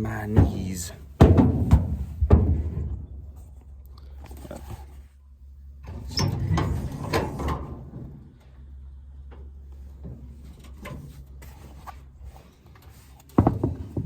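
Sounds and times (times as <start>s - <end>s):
tools clunking in truck bed: 0.1s - 3.4s, 13.2s - 14.0s.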